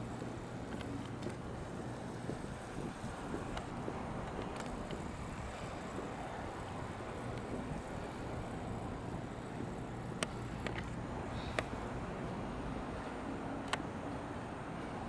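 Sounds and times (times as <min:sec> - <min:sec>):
passing vehicles hum: 0:00.0 - 0:15.0
wind buffeting microphone: 0:00.0 - 0:15.0
sharp clicks: 0:10.2 - 0:11.7.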